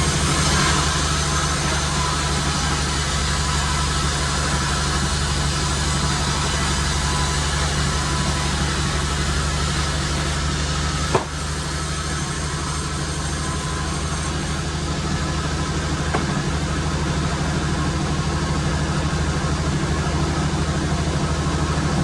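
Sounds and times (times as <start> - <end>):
sawmill machinery running: 0.0 - 22.0
sharp knock: 11.1 - 11.4.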